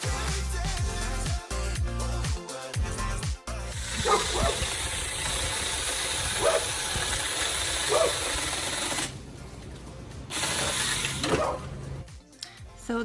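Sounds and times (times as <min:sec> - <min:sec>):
mini chainsaw running: 0:03.7 - 0:09.2, 0:10.3 - 0:11.9.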